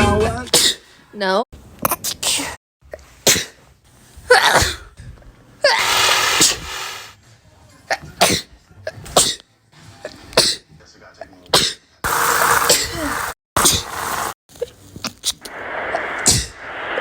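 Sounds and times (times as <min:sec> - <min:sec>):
person sneezing: 0:03.2 - 0:03.6, 0:05.7 - 0:07.2.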